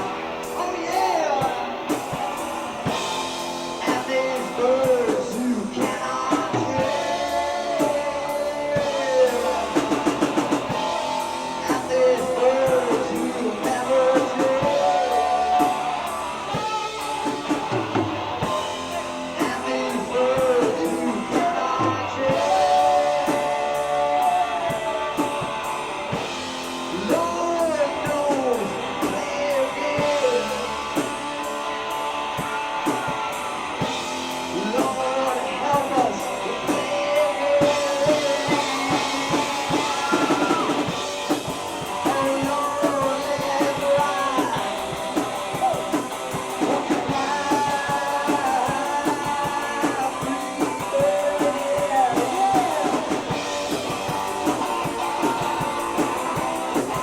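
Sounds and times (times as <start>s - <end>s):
bass guitar: 0.0s - 57.0s
drum kit: 0.0s - 57.0s
electric guitar bending notes: 0.0s - 57.0s.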